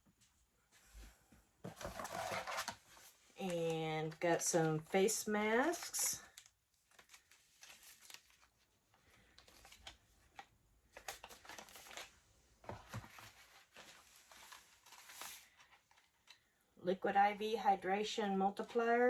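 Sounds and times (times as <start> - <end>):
packaging crinkling and rustling: 1.7 - 16.4.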